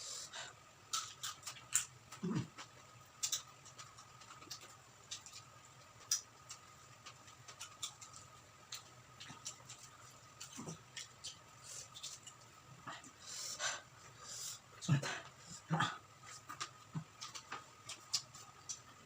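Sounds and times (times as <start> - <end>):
faint steady hum: 0.0 - 19.0
crunchy chewing: 0.8 - 12.5, 16.3 - 19.0.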